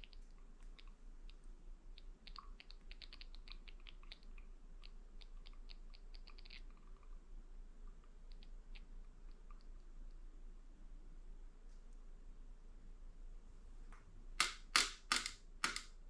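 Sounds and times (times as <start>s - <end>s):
steady low hum: 0.0s - 16.0s
small hard parts clicking: 14.4s - 16.0s.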